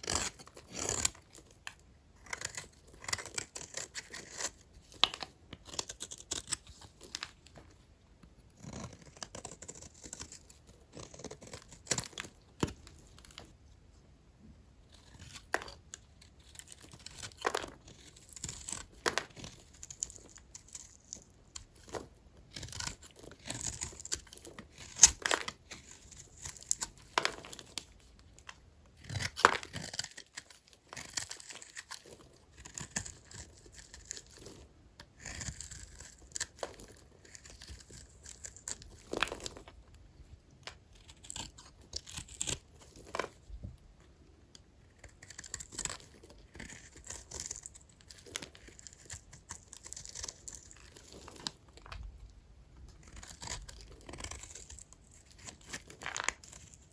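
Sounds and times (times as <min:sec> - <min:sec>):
knife cutting brittle soap: 0:00.0 - 0:13.6, 0:14.8 - 0:56.9.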